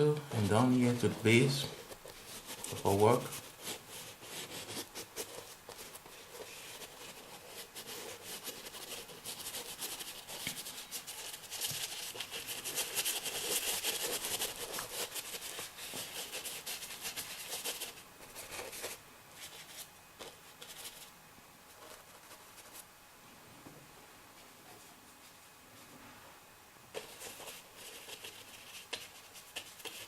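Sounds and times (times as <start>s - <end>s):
paintbrush scrubbing on canvas: 0.4s - 21.1s, 27.0s - 30.0s.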